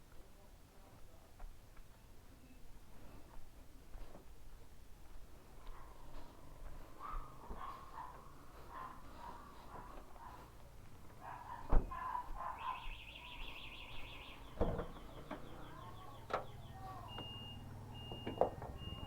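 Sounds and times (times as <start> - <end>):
birds calling and chirping: 11.2 - 19.0.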